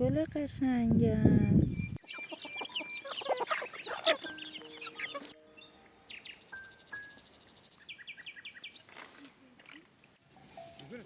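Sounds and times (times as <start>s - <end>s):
small birds chirping: 0.6s - 11.0s
buzzy bird trill: 1.5s - 8.9s.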